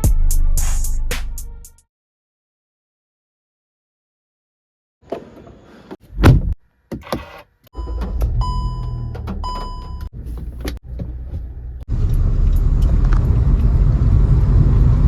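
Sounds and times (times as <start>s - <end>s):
car chime beeping: 7.8s - 10.1s
car engine rumble: 7.8s - 15.0s.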